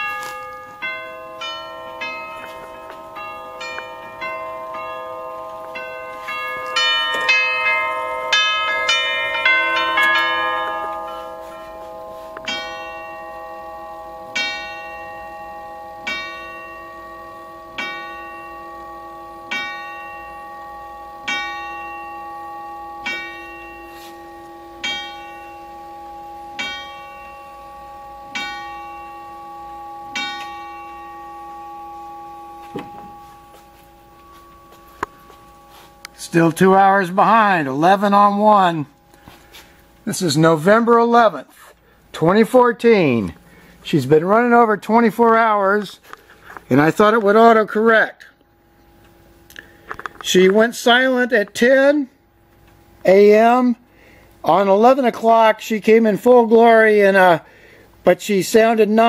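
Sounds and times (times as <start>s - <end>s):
tube chime melody: 0.0s - 45.9s.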